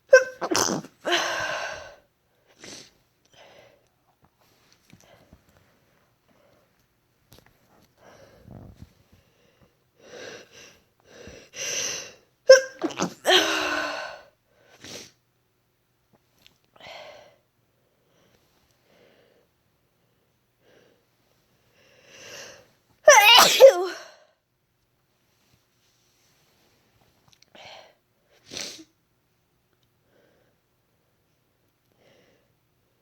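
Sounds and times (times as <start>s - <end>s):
person sneezing loudly: 0.0s - 1.8s, 12.5s - 13.8s, 23.1s - 24.0s.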